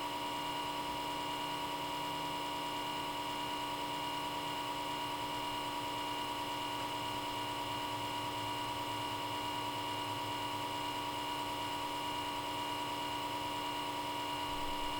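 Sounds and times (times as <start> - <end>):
small cooling fan humming: 0.0 - 14.9.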